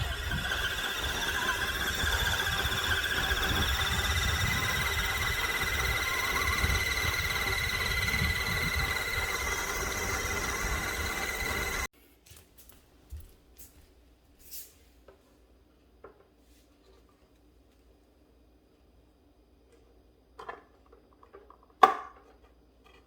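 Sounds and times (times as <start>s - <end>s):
small motor whirring and whining: 0.0s - 11.9s.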